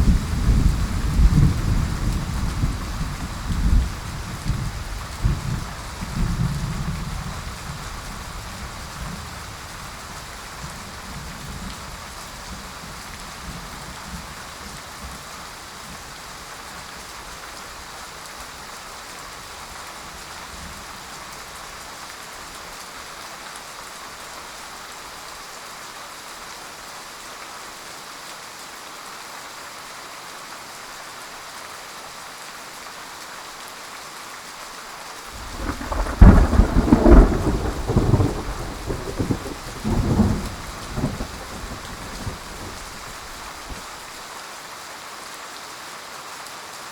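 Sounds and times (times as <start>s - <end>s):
low thunder rumble: 0.0s - 10.0s, 35.4s - 43.8s
heavy rain: 0.0s - 46.9s
loud thunder clap: 35.4s - 43.8s.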